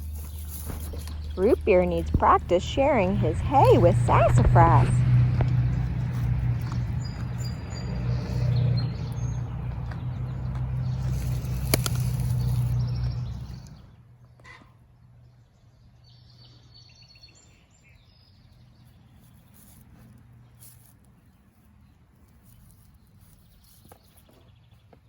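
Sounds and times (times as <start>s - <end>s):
low motor hum: 0.0s - 14.1s
small birds chirping: 0.0s - 14.5s, 15.3s - 25.0s.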